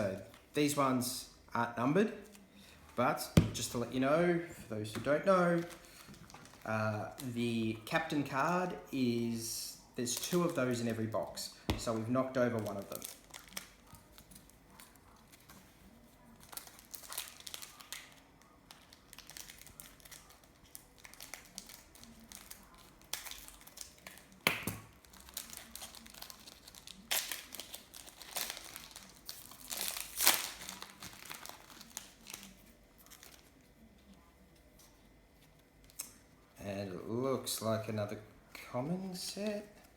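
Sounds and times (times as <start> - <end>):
plastic wrapper tearing and crinkling: 5.3 - 7.4, 11.9 - 15.6, 16.2 - 33.8.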